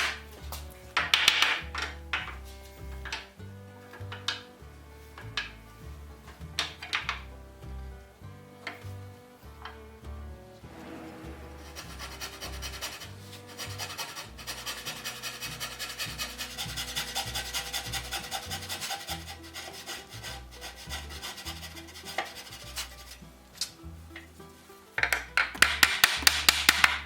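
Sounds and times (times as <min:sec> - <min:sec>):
background music: 0:00.0 - 0:27.0
hand rasp filing wood: 0:10.7 - 0:23.2.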